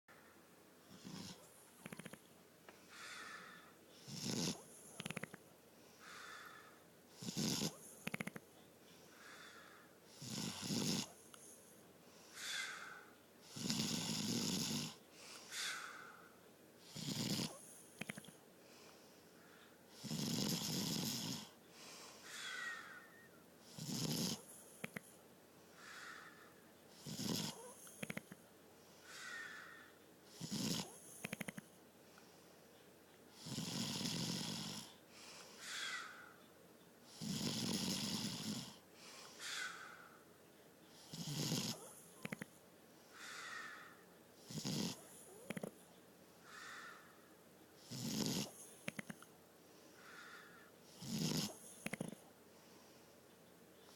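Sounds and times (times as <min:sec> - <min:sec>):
person snoring: 0:00.9 - 0:02.2, 0:02.9 - 0:05.3, 0:06.0 - 0:08.2, 0:09.2 - 0:11.2, 0:12.4 - 0:16.2, 0:16.8 - 0:18.3, 0:19.9 - 0:21.6, 0:23.7 - 0:25.0, 0:27.0 - 0:28.4, 0:29.1 - 0:31.6, 0:33.4 - 0:35.0, 0:37.1 - 0:38.8, 0:41.0 - 0:42.5, 0:44.5 - 0:45.7, 0:47.8 - 0:49.2, 0:50.0 - 0:52.2.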